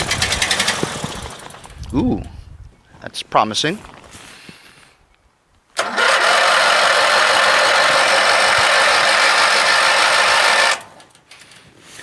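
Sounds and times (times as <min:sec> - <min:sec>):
engine cranking on electric starter: 0:00.0 - 0:02.4, 0:05.8 - 0:11.8.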